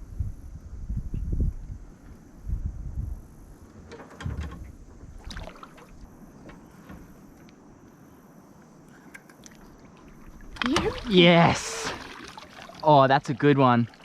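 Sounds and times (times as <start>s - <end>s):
wind buffeting microphone: 0.0s - 7.7s
light clicks and knocks: 3.7s - 7.6s.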